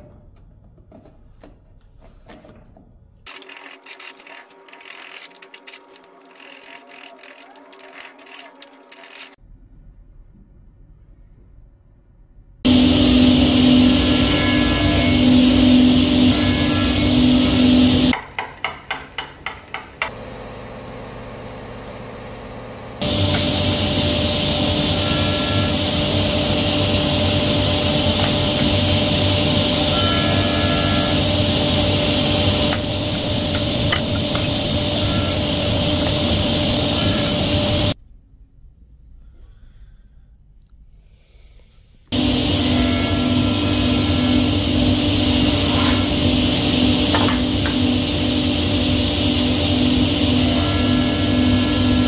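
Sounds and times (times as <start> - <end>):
woodworking machine humming: 3.3 - 9.4, 12.7 - 38.0, 42.1 - 52.0.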